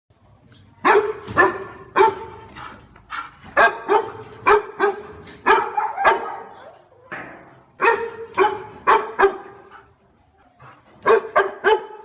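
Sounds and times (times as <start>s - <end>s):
dog barking: 0.8s - 2.3s, 3.6s - 6.6s, 7.8s - 9.6s, 11.0s - 12.0s.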